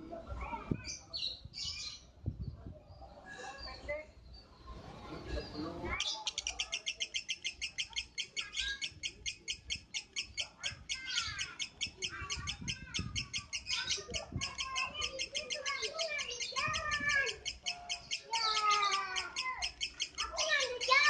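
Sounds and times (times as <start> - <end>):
lovebird chattering: 5.9 - 21.0.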